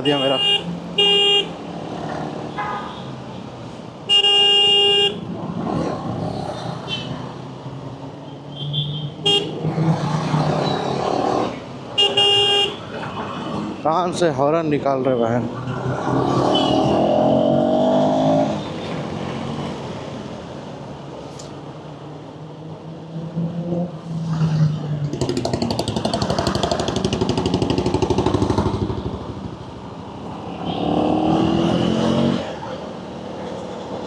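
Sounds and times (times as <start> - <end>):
motorcycle engine accelerating: 25.1 - 29.7.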